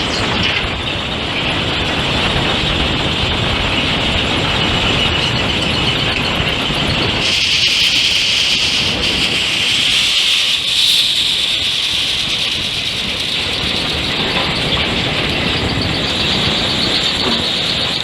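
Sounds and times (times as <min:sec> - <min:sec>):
industrial machinery running: 0:00.0 - 0:18.0
high-pitched squeal: 0:04.6 - 0:18.0.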